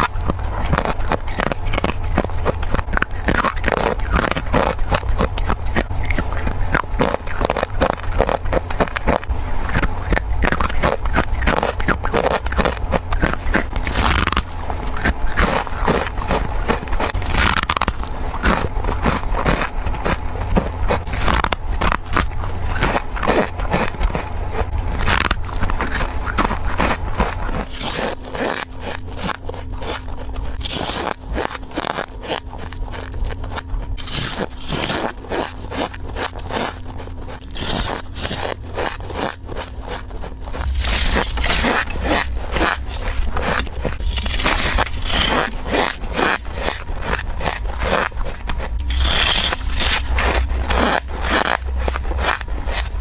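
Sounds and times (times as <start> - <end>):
crunching frost being chewed: 0.0 - 53.0.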